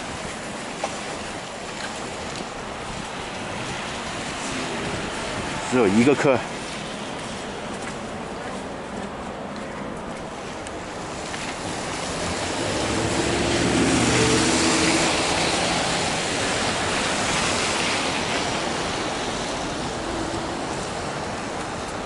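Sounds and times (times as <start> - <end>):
vehicle driving past: 11.8 - 21.0.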